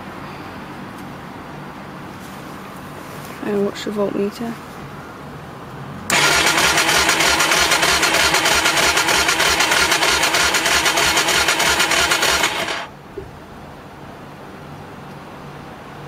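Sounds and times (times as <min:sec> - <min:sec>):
electric starter cranking engine: 0:06.1 - 0:12.9.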